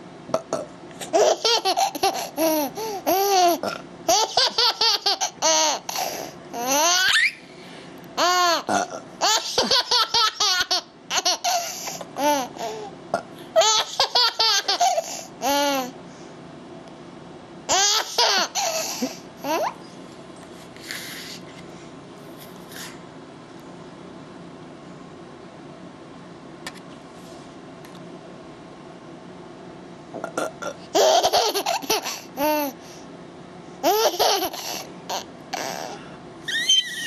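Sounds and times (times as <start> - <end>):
young child giggling: 1.1 - 5.9, 9.2 - 12.5, 31.0 - 32.7, 33.8 - 36.0.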